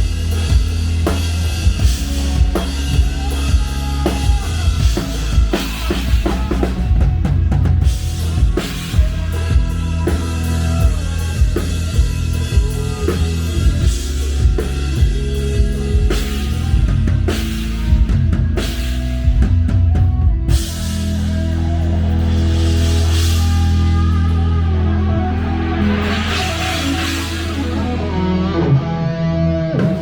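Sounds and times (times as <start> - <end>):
bass notes: 0.0 - 30.0
drum kit playing: 0.0 - 30.0
smooth sustained music: 0.0 - 30.0.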